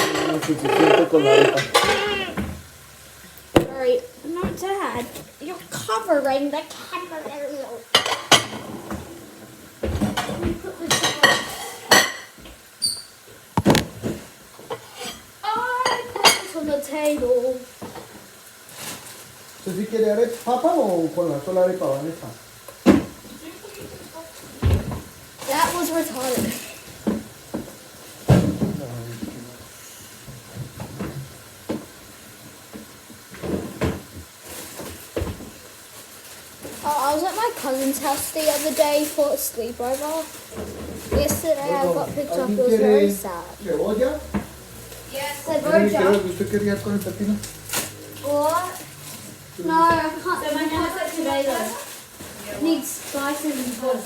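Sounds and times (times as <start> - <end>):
plates and cutlery clattering: 0.0 - 2.4
faint steady hiss: 0.0 - 54.0
kitchen knocks and thumps: 13.6 - 14.3, 27.0 - 28.9.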